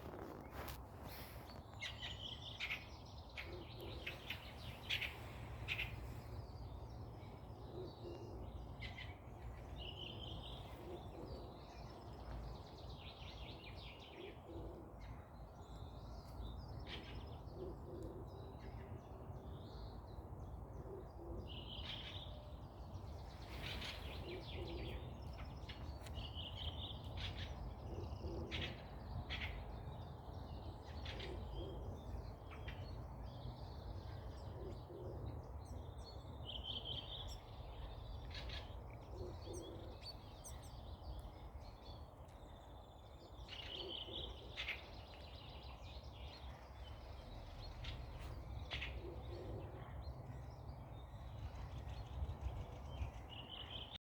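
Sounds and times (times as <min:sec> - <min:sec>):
birds chirping and trilling: 0:00.0 - 0:54.0.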